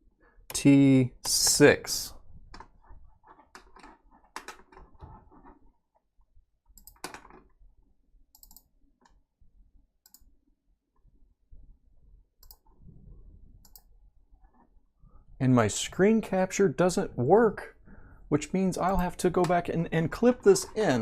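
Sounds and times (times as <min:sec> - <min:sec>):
mouse clicks: 0:12.4 - 0:12.7, 0:13.6 - 0:13.9.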